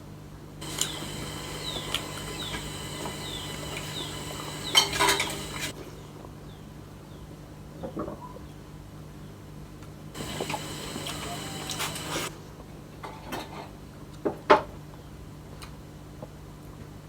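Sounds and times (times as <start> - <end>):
chicks peeping: 0.6 - 5.7, 10.2 - 12.3.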